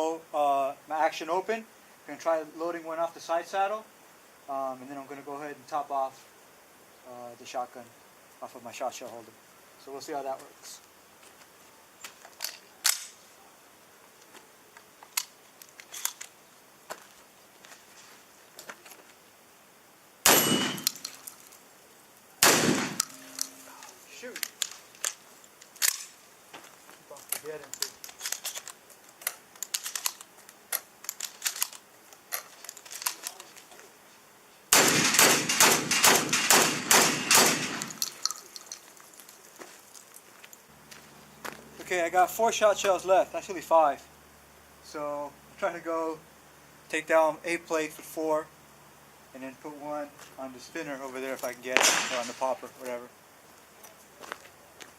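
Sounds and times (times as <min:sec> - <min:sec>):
shotgun blast: 0:20.2 - 0:21.0, 0:22.4 - 0:23.4, 0:34.7 - 0:38.0, 0:51.8 - 0:52.4.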